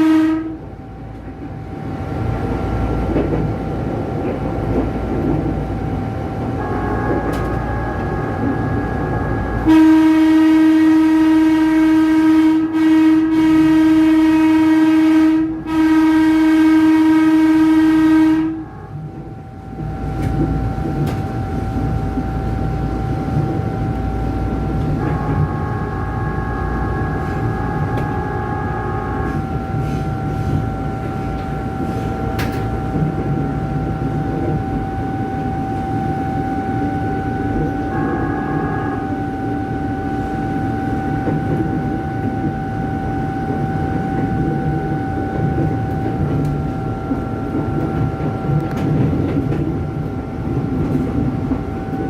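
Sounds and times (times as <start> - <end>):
train horn: 0.0 - 0.8, 6.5 - 19.2, 24.8 - 47.2
train rumbling on track: 0.0 - 52.0.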